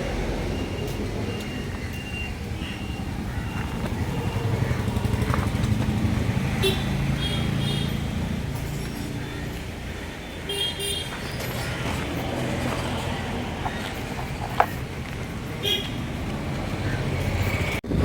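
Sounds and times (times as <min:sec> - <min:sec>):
vehicle engine rumbling: 0:00.0 - 0:18.0.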